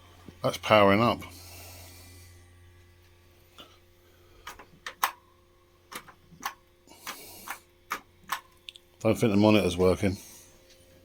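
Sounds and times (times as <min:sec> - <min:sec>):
computer low hum: 0:00.0 - 0:11.0
hard drive clicks: 0:04.4 - 0:05.3, 0:05.9 - 0:08.9.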